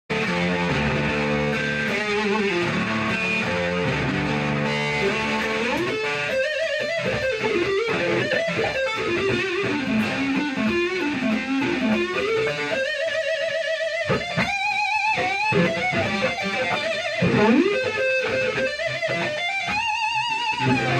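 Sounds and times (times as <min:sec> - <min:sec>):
electric guitar playing: 0:00.1 - 0:20.9.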